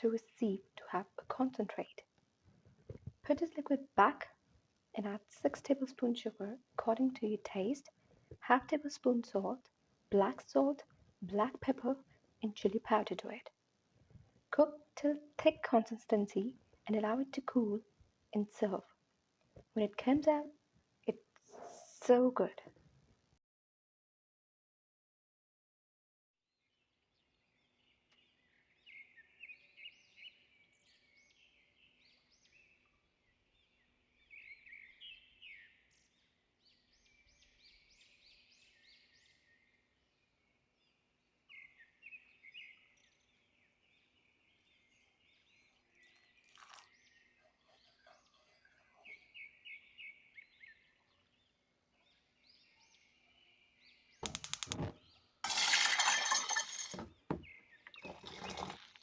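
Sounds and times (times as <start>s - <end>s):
small birds chirping: 27.3s - 59.0s
loud clattering and clinking: 55.4s - 57.1s.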